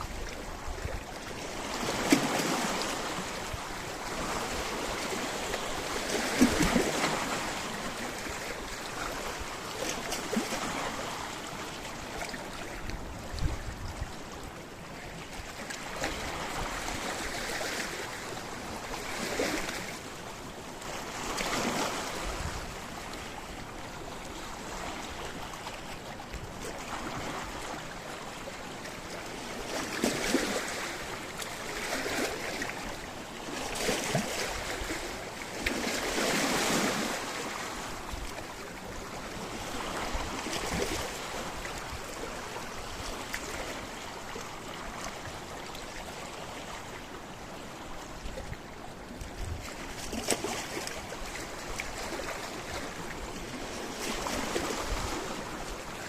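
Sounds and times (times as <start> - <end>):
waves splashing against rocks: 0.0 - 23.4, 28.7 - 47.0, 49.1 - 56.0.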